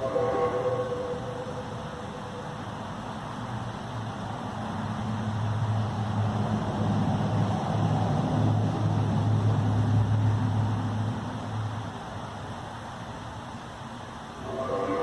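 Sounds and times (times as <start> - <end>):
low droning hum: 0.0 - 3.0.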